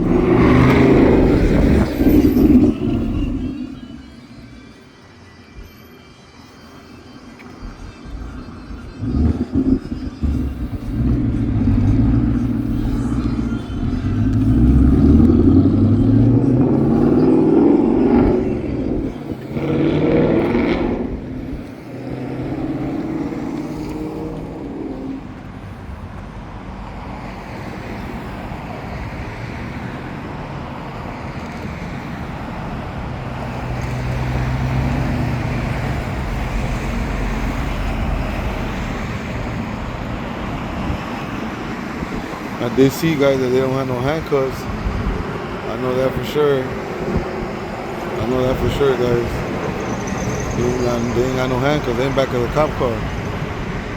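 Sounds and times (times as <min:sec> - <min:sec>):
car engine speeding up: 0:00.0 - 0:04.7, 0:07.6 - 0:25.7
vehicle passing close by: 0:00.0 - 0:04.7, 0:07.6 - 0:53.9
traffic and road noise: 0:00.0 - 0:53.9.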